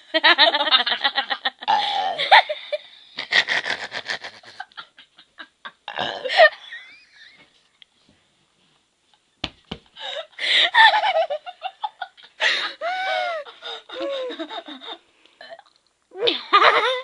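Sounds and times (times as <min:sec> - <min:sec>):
girls laughing: 0:10.6 - 0:15.0, 0:16.3 - 0:17.0.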